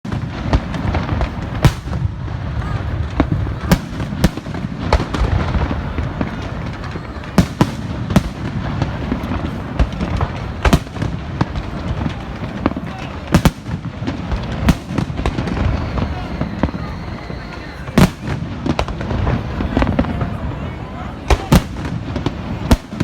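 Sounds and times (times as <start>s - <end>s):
fireworks bangs: 0.0s - 23.0s
rumble of explosions: 0.1s - 23.0s.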